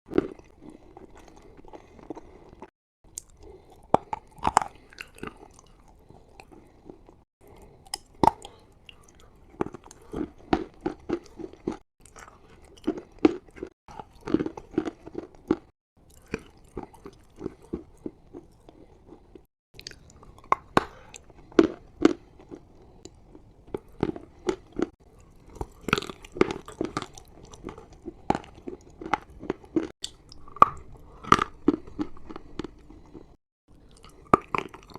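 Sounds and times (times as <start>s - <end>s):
crunching and chewing chalk: 0.1s - 34.9s.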